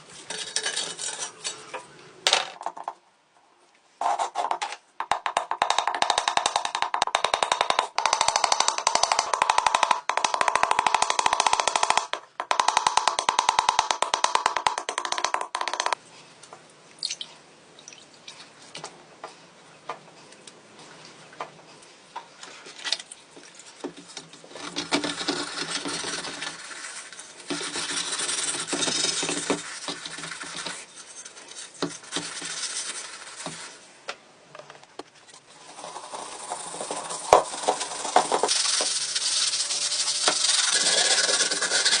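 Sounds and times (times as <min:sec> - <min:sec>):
rubbing and scraping on steel helmet: 0:00.0 - 0:01.7, 0:23.4 - 0:33.9, 0:35.1 - 0:42.0.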